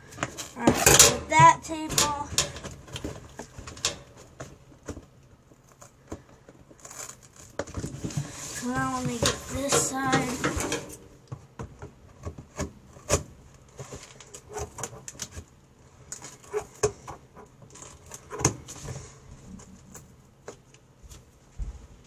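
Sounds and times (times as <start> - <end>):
packing tape peeled off cardboard: 6.7 - 8.8.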